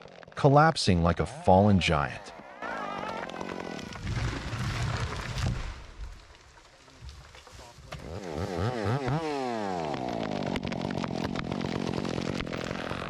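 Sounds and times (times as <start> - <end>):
chainsaw engine revving: 2.3 - 5.7, 7.8 - 13.0.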